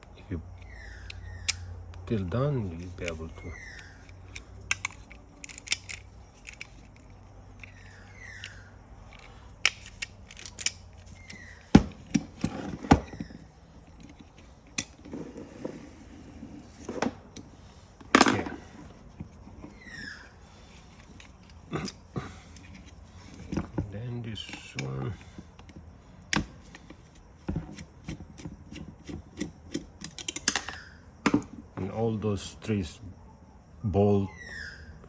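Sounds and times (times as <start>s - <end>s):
seatbelt retractor parts clicking: 2.8s - 15.3s, 16.7s - 30.8s.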